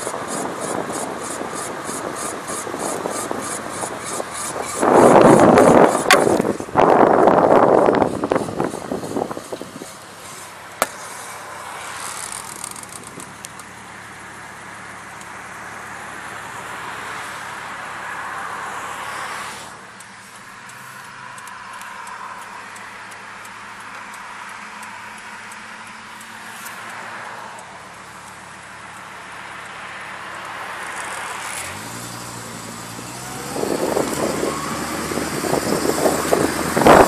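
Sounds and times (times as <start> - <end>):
road noise: 0.0 - 37.0
vehicle wheel noise while rolling: 0.0 - 37.0
sharp click: 10.3 - 11.2, 11.9 - 13.7.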